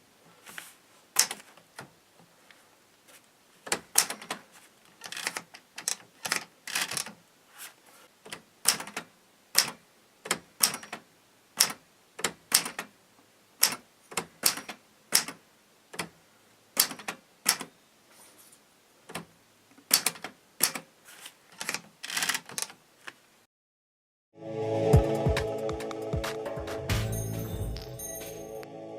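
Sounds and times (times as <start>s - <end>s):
manual typewriter keys clacking: 1.2s - 1.5s, 3.7s - 4.4s, 5.0s - 7.2s, 8.3s - 11.0s, 11.6s - 12.9s, 13.6s - 16.1s, 16.8s - 17.7s, 19.9s - 20.9s, 21.6s - 22.8s.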